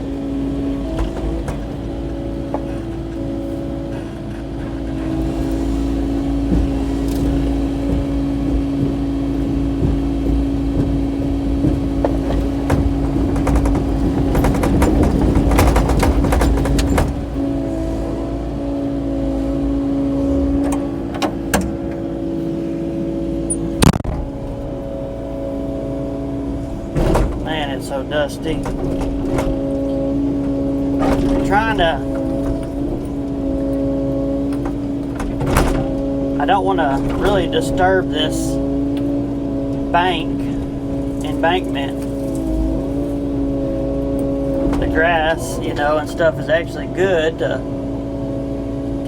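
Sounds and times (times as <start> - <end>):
excavator diesel engine running: 0.0 - 49.0
clattering and scraping through rock: 6.5 - 17.4, 28.4 - 33.8.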